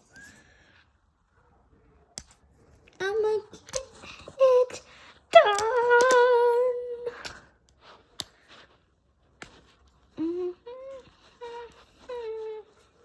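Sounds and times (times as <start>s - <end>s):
person humming: 3.0s - 7.3s, 10.1s - 13.0s.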